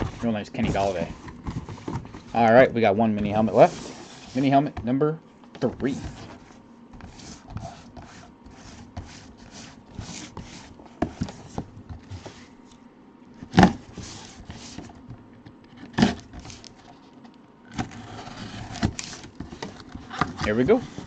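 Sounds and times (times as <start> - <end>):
cardboard box rustling and scraping: 0.0 - 4.8, 5.6 - 12.6, 13.5 - 15.0, 17.7 - 21.0.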